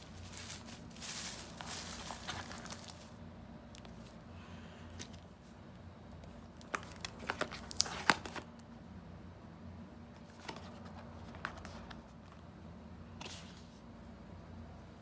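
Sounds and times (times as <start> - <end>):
plastic packaging crinkling: 0.0 - 4.2, 6.6 - 8.5.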